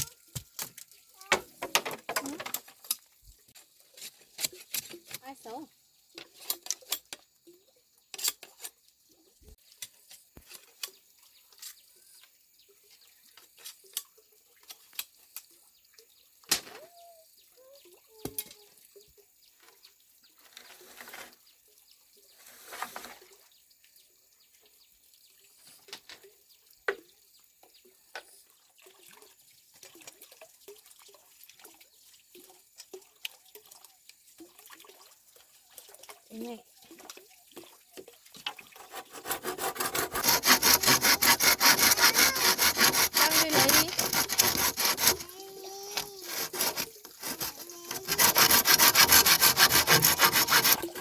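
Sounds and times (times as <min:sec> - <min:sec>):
water dripping: 0:28.7 - 0:39.0
water splashes: 0:28.7 - 0:39.2
objects being handled: 0:38.5 - 0:51.0.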